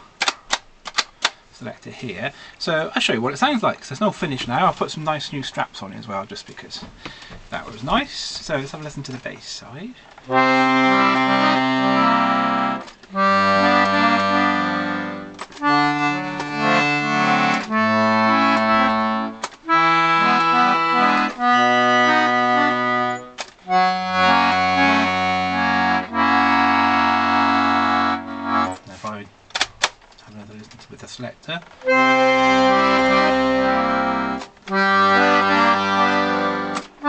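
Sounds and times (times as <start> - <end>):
accordion bass notes and chords: 10.2 - 29.5, 31.8 - 37.0.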